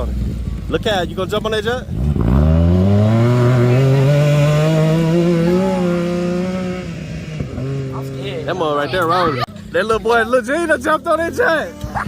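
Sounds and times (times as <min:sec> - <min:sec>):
atv engine accelerating: 0:00.0 - 0:12.0.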